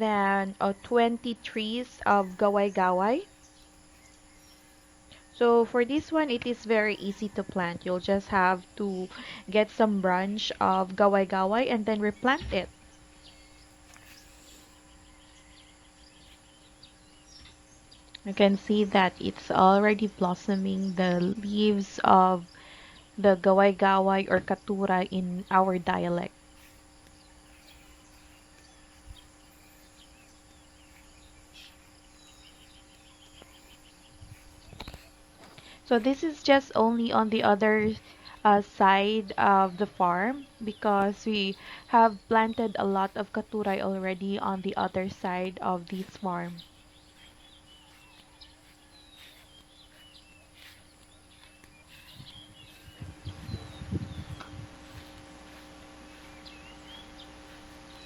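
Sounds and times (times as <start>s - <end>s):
faint steady hum: 0.0s - 58.0s
insects buzzing: 0.0s - 58.0s
bird chirps: 1.5s - 5.4s, 11.8s - 19.0s, 24.2s - 58.0s
low rumbling thumps: 52.0s - 57.4s.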